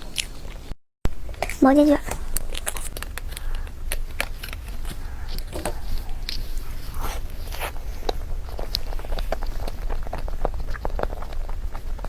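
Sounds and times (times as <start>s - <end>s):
mouth chewing: 0.0s - 12.0s.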